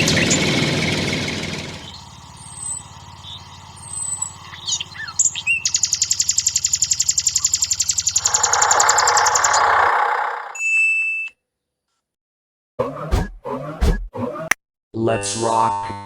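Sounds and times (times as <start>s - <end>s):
low pulsing hum: 0.0s - 9.8s
birds chirping: 0.0s - 10.6s.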